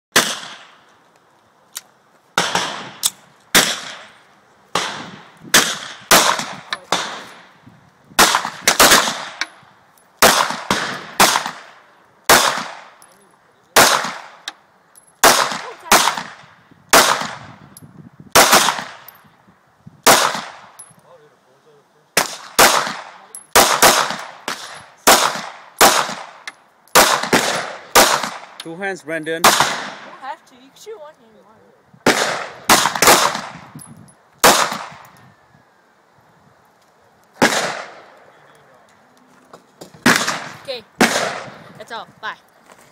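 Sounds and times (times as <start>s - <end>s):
pistol shots: 0.1s - 0.8s, 2.4s - 7.5s, 8.2s - 9.5s, 10.2s - 13.0s, 13.8s - 14.5s, 15.2s - 17.5s, 18.4s - 19.1s, 20.0s - 20.7s, 22.2s - 28.6s, 29.4s - 30.1s, 32.0s - 33.7s, 34.4s - 35.1s, 37.4s - 38.2s, 40.0s - 41.6s.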